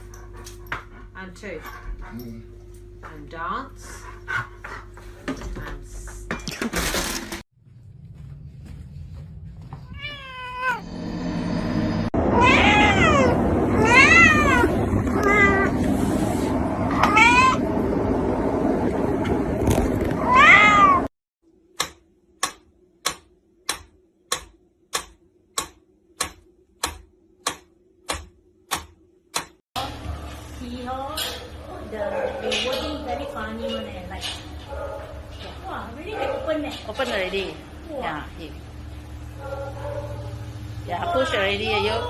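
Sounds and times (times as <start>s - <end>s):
cat meowing: 9.8s - 10.8s, 12.4s - 15.7s, 17.0s - 17.6s, 20.2s - 21.1s.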